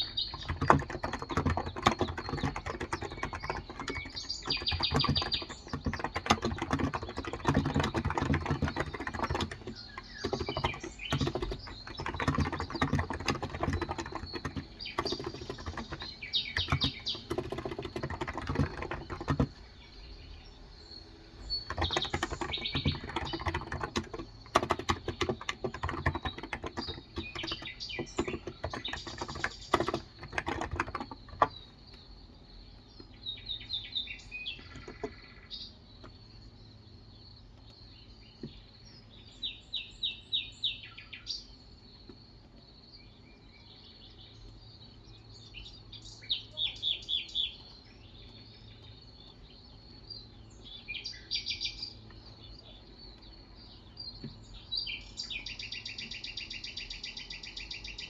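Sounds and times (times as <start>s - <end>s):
fast keyboard typing clicks: 0.0s - 19.8s, 21.4s - 32.0s, 34.5s - 35.3s
birds chirping: 0.0s - 58.0s.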